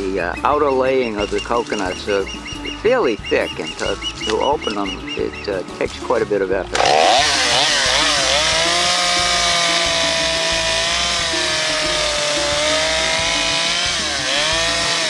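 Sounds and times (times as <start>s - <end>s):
chainsaw cutting coconut husk: 6.1s - 15.0s.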